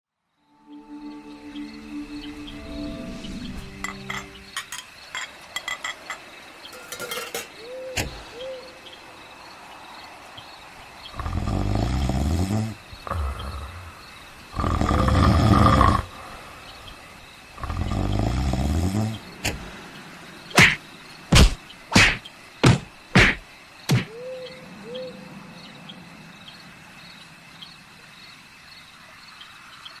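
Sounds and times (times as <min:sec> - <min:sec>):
loud snores: 0:11.1 - 0:16.2, 0:17.6 - 0:19.2
sharp knocks: 0:20.6 - 0:24.1.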